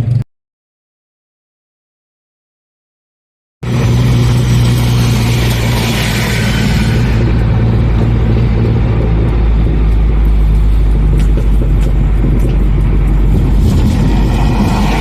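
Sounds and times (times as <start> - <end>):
car engine running: 3.6 - 15.0.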